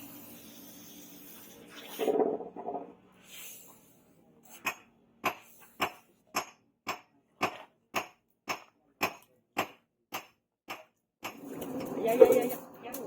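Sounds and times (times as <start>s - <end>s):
hammer striking steel on anvil: 4.5s - 11.4s.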